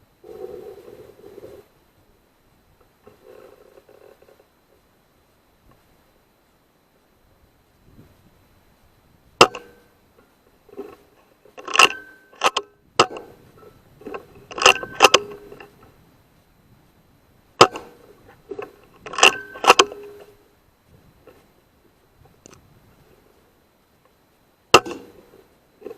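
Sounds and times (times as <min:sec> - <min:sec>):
metallic clicks of rifle action: 0:10.7 - 0:15.9, 0:17.6 - 0:20.4
air rifle shots: 0:14.4 - 0:15.6, 0:17.6 - 0:18.1, 0:19.0 - 0:20.3, 0:24.7 - 0:25.3.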